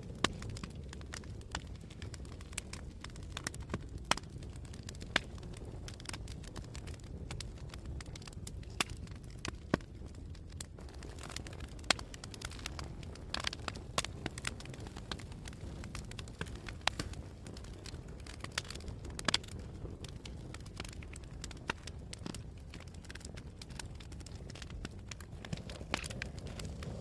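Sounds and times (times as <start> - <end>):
fire crackling and popping: 0.0 - 27.0
low rumble of flames: 0.0 - 27.0.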